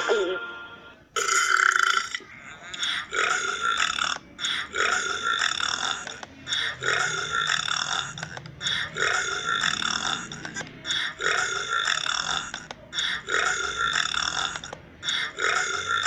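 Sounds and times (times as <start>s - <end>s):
person belching: 1.2s - 16.0s.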